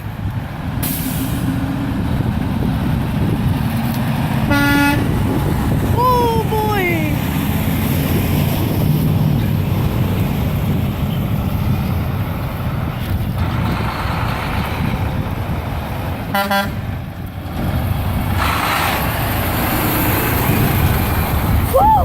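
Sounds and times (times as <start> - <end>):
trucks driving past: 0.0 - 22.0
truck horn toot: 4.5 - 5.2, 16.3 - 16.8.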